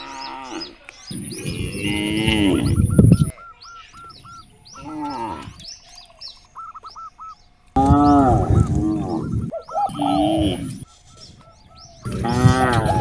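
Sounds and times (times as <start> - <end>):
cattle lowing: 0.0 - 3.4, 4.0 - 5.7, 7.8 - 13.0
birds chirping: 0.0 - 13.0.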